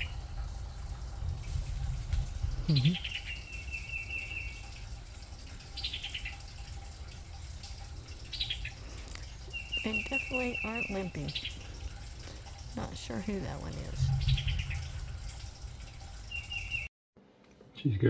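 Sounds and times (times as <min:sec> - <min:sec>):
low rumble: 0:00.0 - 0:03.5, 0:11.6 - 0:16.9
songbird singing: 0:00.0 - 0:16.9.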